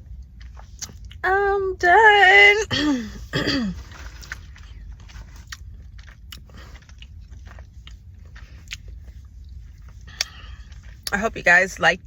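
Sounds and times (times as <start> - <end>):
low background hum: 0.0 - 12.0
person chewing: 0.1 - 1.2, 3.1 - 11.1.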